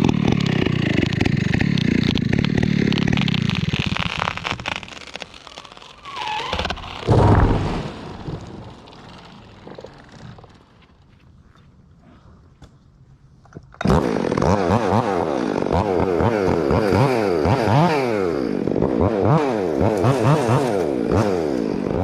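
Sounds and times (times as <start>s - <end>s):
chainsaw running: 0.0s - 11.1s, 13.8s - 22.0s
heavy low thud: 7.1s - 9.1s.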